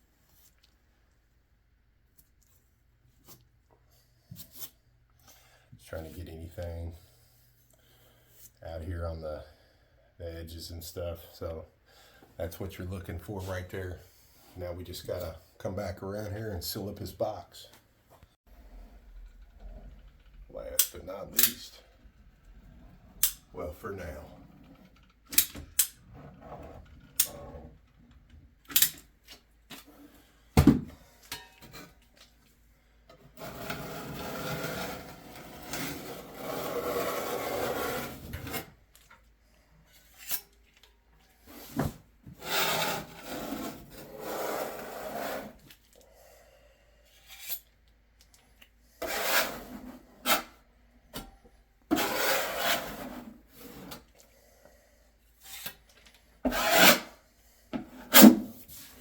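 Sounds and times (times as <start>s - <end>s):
hand tool scraping sealant: 49.0s - 50.6s, 51.9s - 54.1s, 56.5s - 57.2s.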